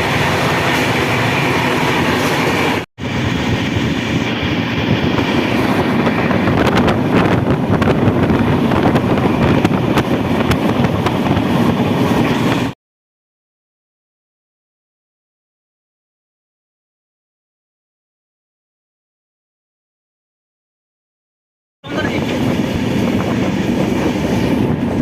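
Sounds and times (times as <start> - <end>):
train wheels on track: 0.0 - 12.8, 21.9 - 25.0.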